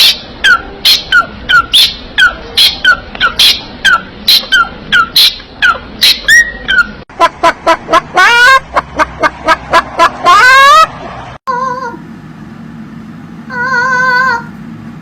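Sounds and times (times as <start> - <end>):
parrot squawking: 0.0 - 10.9, 13.5 - 14.5.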